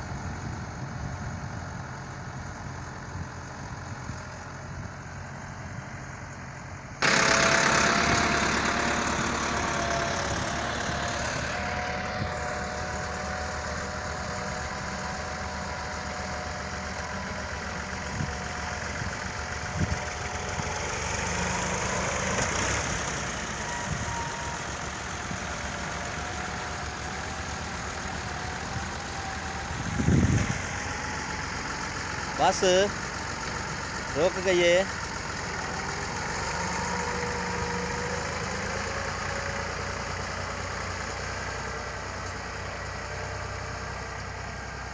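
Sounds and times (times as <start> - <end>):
heavy machinery engine running: 0.0 - 44.9.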